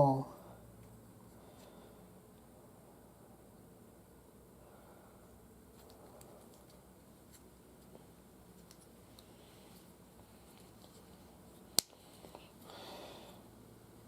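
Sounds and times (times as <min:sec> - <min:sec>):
soft rustle: 0:05.7 - 0:12.7.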